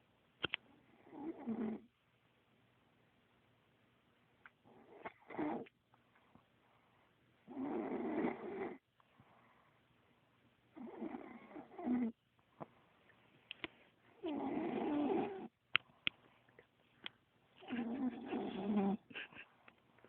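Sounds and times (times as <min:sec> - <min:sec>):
person snoring: 0:17.6 - 0:19.0.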